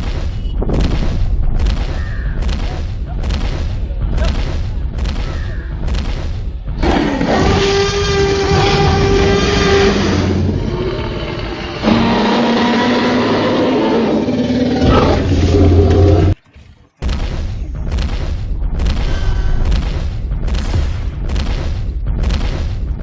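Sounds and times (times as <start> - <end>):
low rumble: 0.3 - 16.4
creature roaring: 6.8 - 16.4
steady horn-like tone: 7.3 - 14.2.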